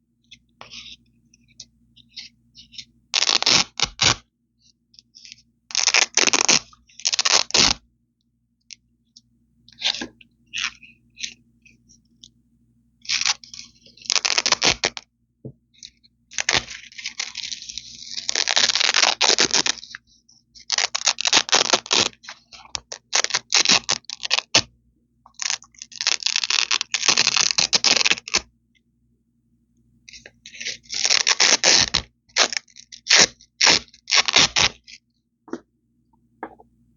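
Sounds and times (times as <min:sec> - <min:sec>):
velcro ripping apart: 0:03.1 - 0:04.2, 0:05.2 - 0:07.8, 0:13.0 - 0:15.0, 0:16.3 - 0:20.0, 0:20.6 - 0:24.7, 0:25.3 - 0:28.4, 0:30.6 - 0:35.0.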